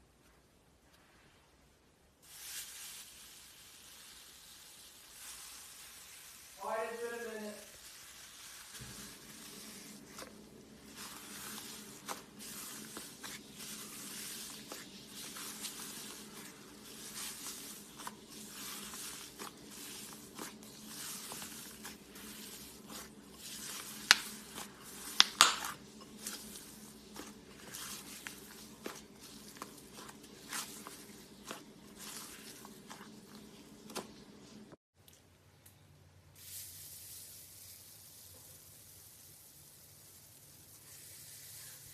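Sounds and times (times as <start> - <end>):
slime squishing and crackling: 7.6 - 34.4
slime popping: 10.9 - 26.5.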